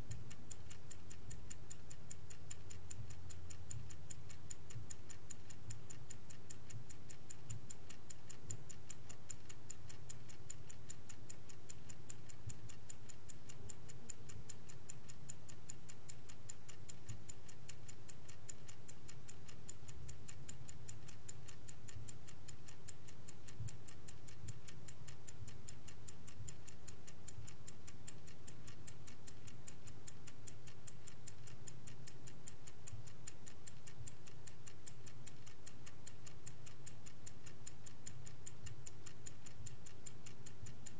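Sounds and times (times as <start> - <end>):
mechanical clock ticking: 0.0 - 40.9.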